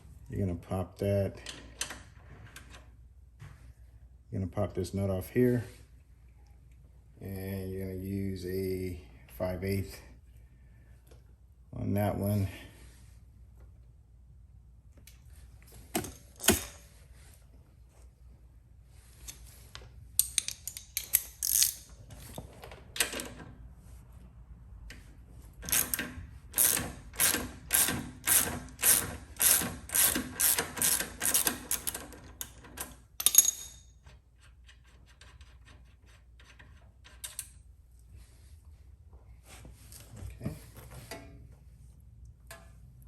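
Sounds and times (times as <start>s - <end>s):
socket ratchet clicking: 25.6s - 32.6s.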